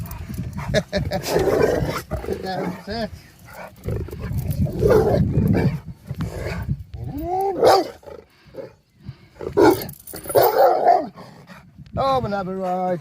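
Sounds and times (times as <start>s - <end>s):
dog low rumble: 3.6s - 7.5s.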